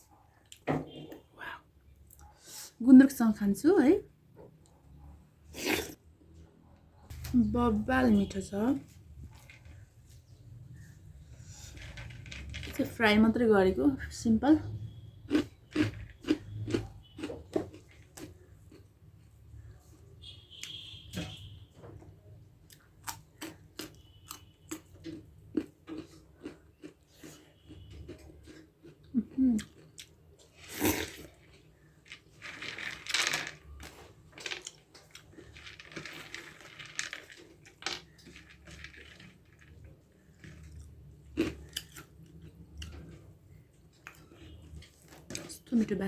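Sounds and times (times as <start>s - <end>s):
person chewing: 15.3s - 19.3s, 22.6s - 31.8s, 40.4s - 43.2s.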